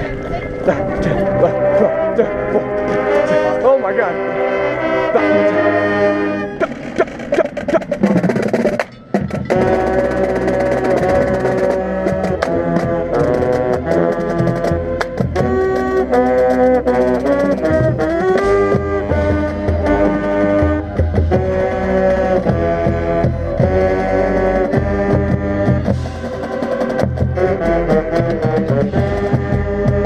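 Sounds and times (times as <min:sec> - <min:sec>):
marching band playing: 0:00.0 - 0:30.0
drum and percussion hits: 0:06.6 - 0:30.0.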